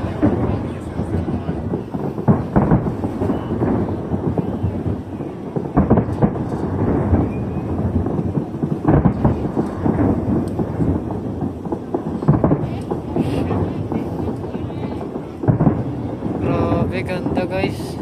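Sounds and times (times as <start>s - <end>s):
fireworks booming and crackling: 0.0s - 18.0s.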